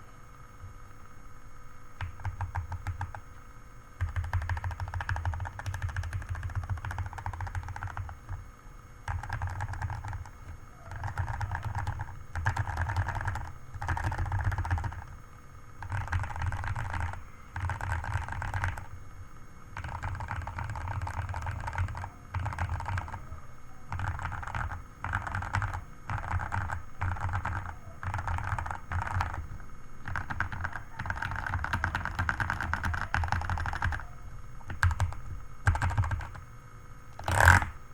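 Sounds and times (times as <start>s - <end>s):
mechanical keyboard typing: 2.0s - 3.4s, 4.0s - 15.2s, 15.8s - 19.0s, 19.8s - 36.4s, 37.2s - 37.8s.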